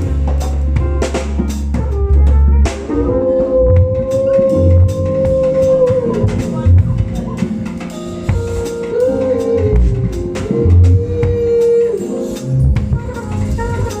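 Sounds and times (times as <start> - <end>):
live band playing: 0.0 - 14.0.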